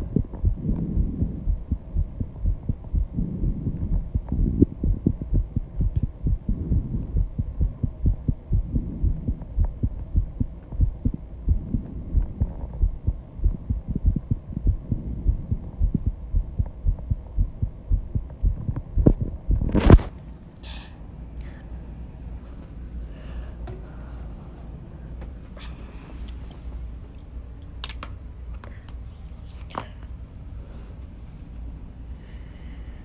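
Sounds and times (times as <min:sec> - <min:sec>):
heartbeat thumps: 0:00.0 - 0:20.1.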